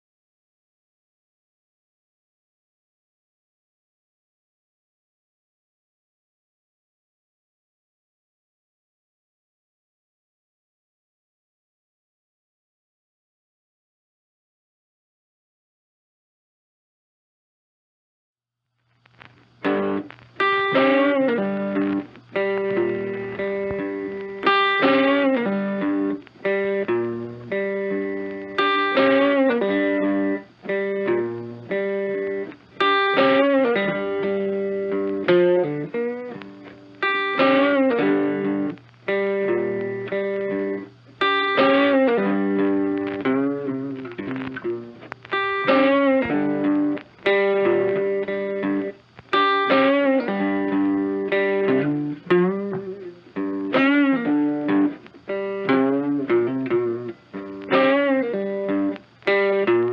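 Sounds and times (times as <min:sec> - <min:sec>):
distorted plucked guitar: 0:18.8 - 0:59.9.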